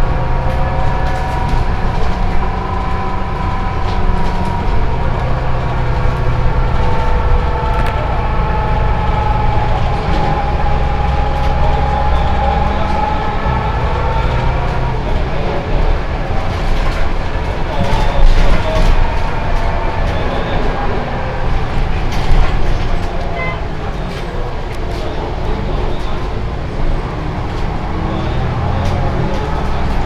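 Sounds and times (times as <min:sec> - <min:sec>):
bus drivetrain rumble and whine: 0:00.0 - 0:30.0.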